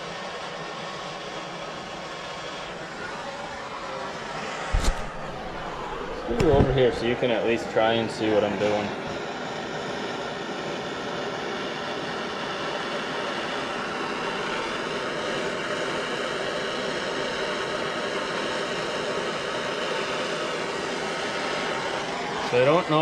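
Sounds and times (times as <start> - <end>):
gas burner hissing: 0.0 - 23.0.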